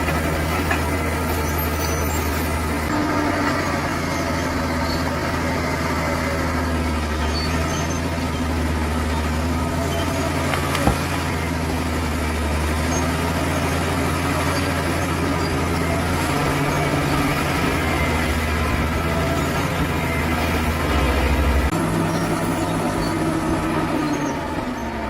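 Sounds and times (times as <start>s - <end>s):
bulldozer diesel engine running: 0.0s - 25.0s.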